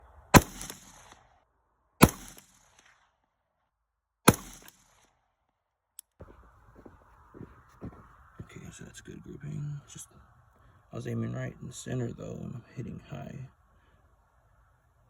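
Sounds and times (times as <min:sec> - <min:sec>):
rifle gunshots: 0:00.3 - 0:01.2, 0:02.0 - 0:02.9, 0:04.3 - 0:05.0.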